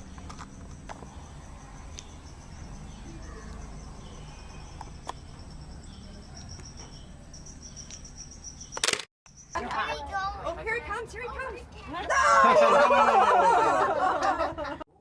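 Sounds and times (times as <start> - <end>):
insects trilling: 0.0 - 10.0.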